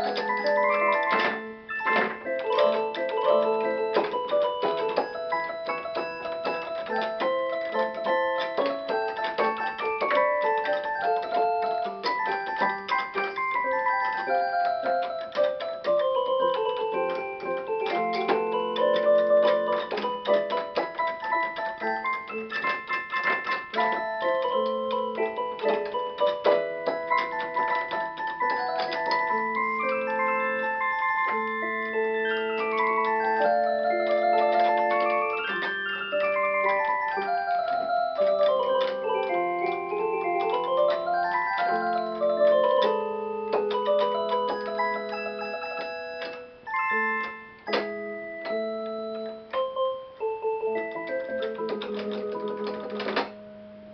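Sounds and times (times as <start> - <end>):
electronic organ melody: 0.0 - 53.9.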